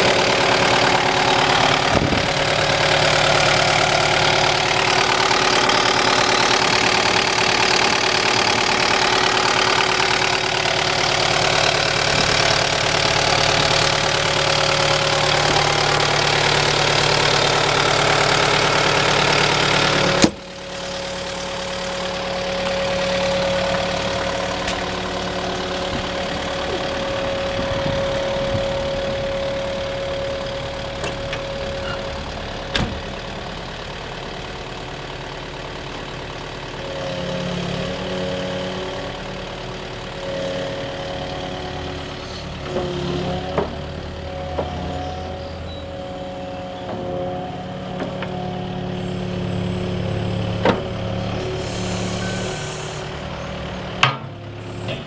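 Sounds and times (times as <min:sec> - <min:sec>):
engine idling: 0:00.0 - 0:55.0.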